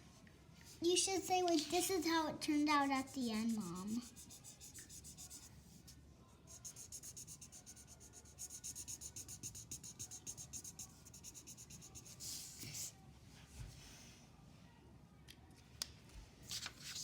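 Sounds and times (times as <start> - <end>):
pen scratching on paper: 2.8 - 5.5, 6.5 - 12.6.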